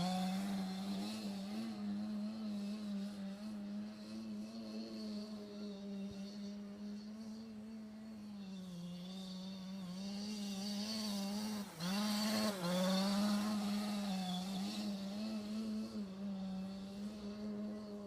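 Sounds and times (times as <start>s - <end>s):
toy car electric motor whining: 7.4s - 15.8s.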